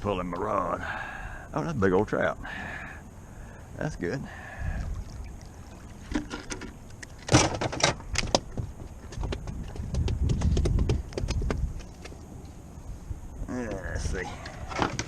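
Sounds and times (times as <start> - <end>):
wind buffeting microphone: 4.3 - 6.9, 8.0 - 15.0
knocks and clatter in a boat: 6.1 - 11.9.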